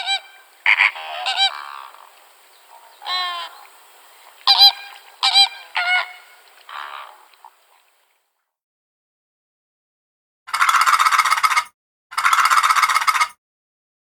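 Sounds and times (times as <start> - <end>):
waterfowl honking: 0.0 - 8.1.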